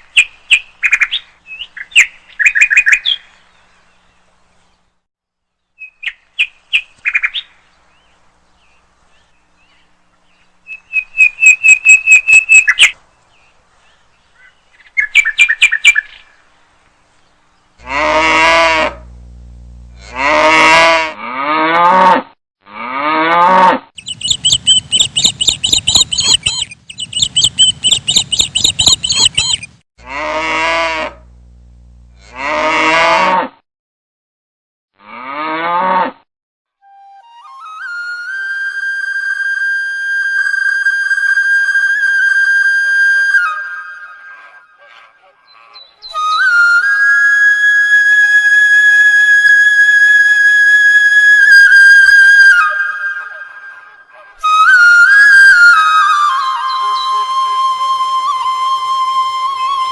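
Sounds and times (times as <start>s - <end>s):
birds chirping and trilling: 0.0s - 5.0s, 5.6s - 18.0s, 24.0s - 29.8s, 44.3s - 46.5s
cows mooing: 17.8s - 19.1s, 19.9s - 22.2s, 32.1s - 33.3s.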